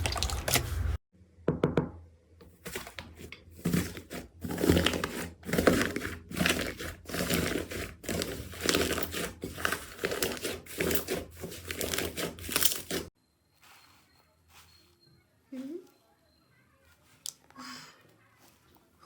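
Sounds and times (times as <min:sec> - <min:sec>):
slime squelching and crackling: 0:00.0 - 0:01.0.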